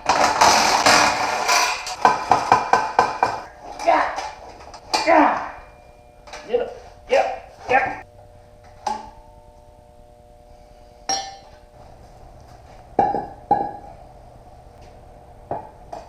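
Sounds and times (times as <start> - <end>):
metal tubing clinking: 11.1 - 11.6.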